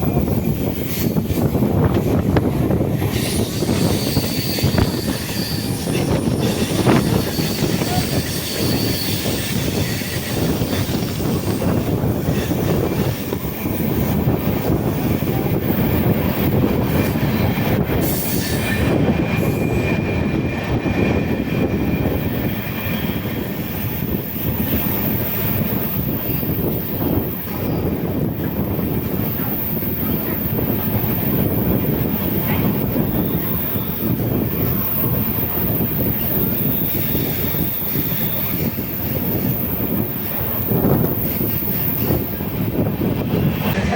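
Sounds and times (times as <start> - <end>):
train wheels rumbling on rails: 0.0 - 43.9
faint wheel squeal: 3.1 - 10.9.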